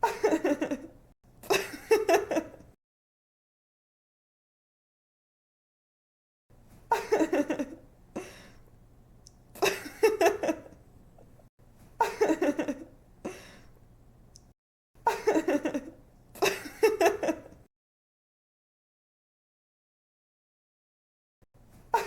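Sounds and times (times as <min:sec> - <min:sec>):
woman giggling: 0:00.0 - 0:02.7, 0:06.9 - 0:08.3, 0:09.6 - 0:10.8, 0:12.0 - 0:12.9, 0:15.1 - 0:17.6
faint steady hum: 0:06.6 - 0:17.6.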